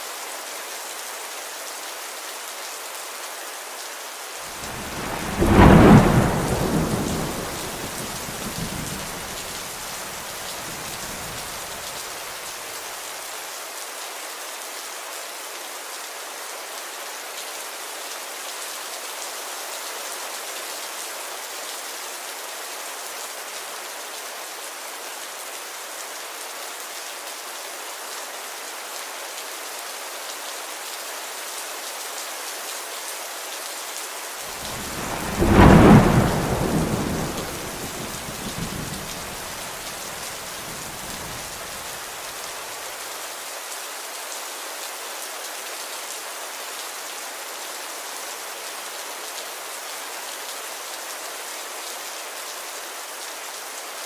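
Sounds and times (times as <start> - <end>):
steady rain: 0.0 - 54.0
thunder clap rumbling: 4.5 - 11.7, 34.5 - 41.9.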